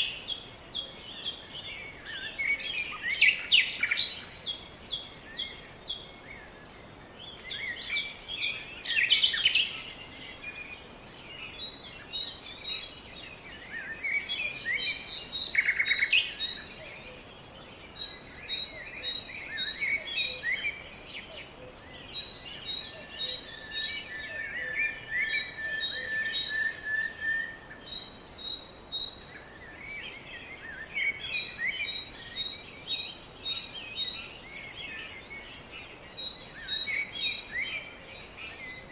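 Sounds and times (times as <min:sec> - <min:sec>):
birds chirping and singing: 0:00.0 - 0:38.9.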